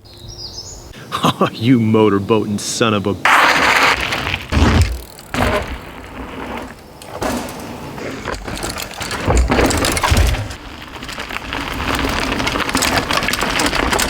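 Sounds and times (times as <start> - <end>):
rumbling and rattling bike noise: 3.2 - 14.0.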